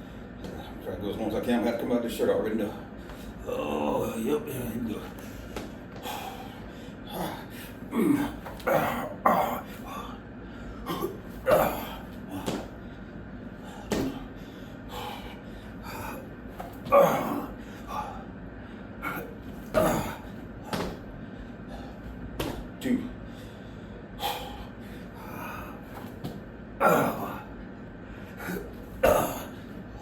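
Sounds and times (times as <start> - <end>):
man grunting: 3.4 - 5.0, 7.0 - 10.2, 10.8 - 12.7, 15.8 - 18.2, 19.0 - 21.0, 26.8 - 27.5, 28.4 - 29.7
man breathing hard: 5.2 - 22.2, 23.1 - 26.2, 26.9 - 30.0.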